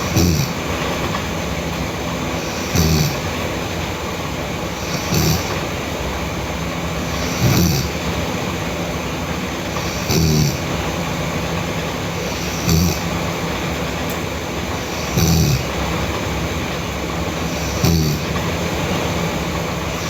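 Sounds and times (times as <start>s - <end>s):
person snoring: 0.0s - 0.6s, 2.4s - 3.4s, 4.8s - 5.6s, 7.1s - 8.0s, 9.8s - 10.7s, 12.2s - 13.1s, 14.8s - 15.8s, 17.5s - 18.4s.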